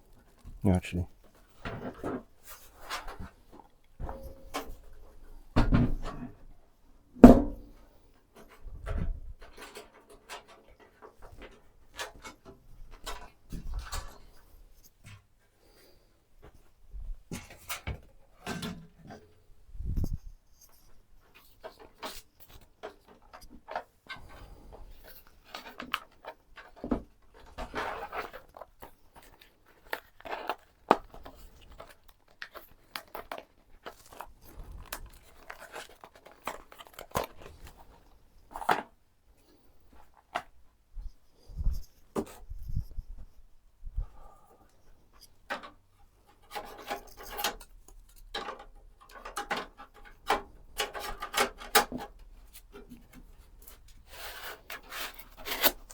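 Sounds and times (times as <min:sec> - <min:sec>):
hands handling computer parts: 0:20.6 - 0:43.4, 0:44.8 - 0:55.9.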